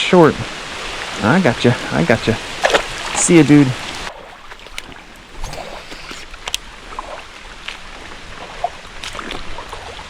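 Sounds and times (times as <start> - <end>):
creek water splashing and trickling: 0.0 - 10.0
small splashes and clicks: 2.6 - 3.2, 4.1 - 10.0.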